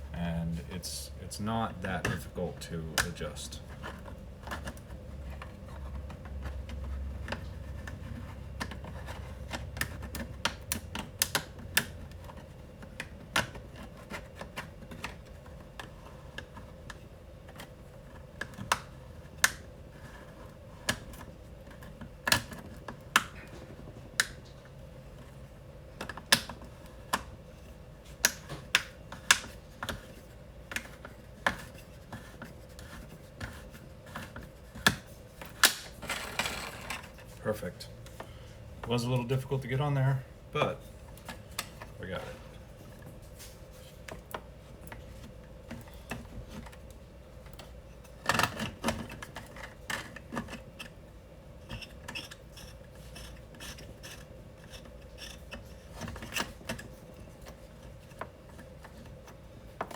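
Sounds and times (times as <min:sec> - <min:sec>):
clicks and taps of hard parts: 0:02.9 - 0:17.7, 0:28.2 - 0:37.1.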